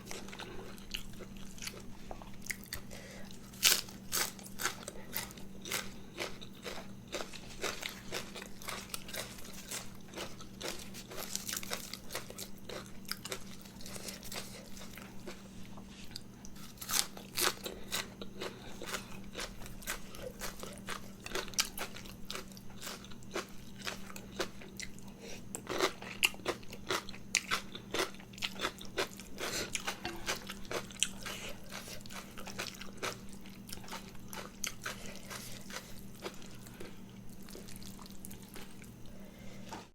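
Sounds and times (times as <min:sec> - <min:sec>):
person chewing and crunching food: 0:00.0 - 0:39.9
steady low hum: 0:00.0 - 0:39.9.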